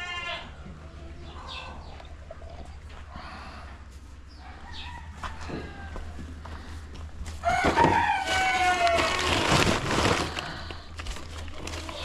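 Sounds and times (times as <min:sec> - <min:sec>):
rooster crowing: 0:04.4 - 0:06.2, 0:07.4 - 0:09.4.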